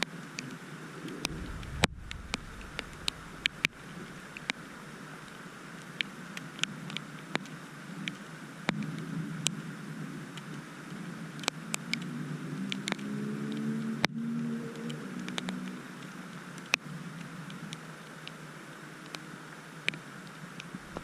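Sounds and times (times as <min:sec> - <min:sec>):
low outdoor rumble: 0:00.5 - 0:06.9, 0:20.6 - 0:21.0
passing vehicle engine humming: 0:00.9 - 0:05.8
raindrop taps: 0:01.2 - 0:05.4.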